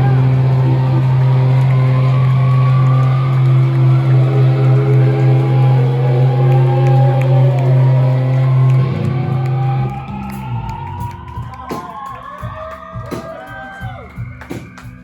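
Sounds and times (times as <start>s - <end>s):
sliding wavering guitar tones: 0.0s - 11.2s
rock band music: 0.0s - 15.0s.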